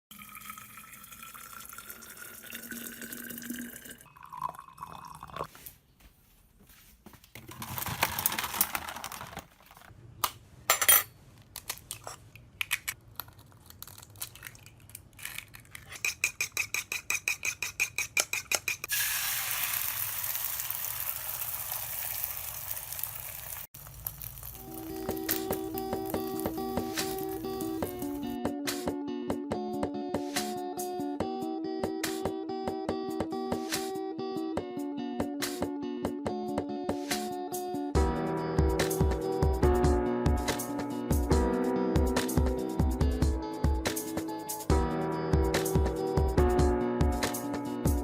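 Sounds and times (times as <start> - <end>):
running water: 0.1 - 5.5.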